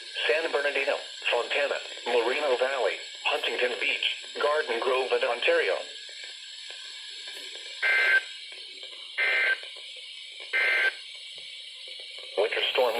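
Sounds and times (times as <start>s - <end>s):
radio receiver hiss: 0.0s - 12.9s
buzzing digital data tones: 7.8s - 8.3s, 10.5s - 11.0s.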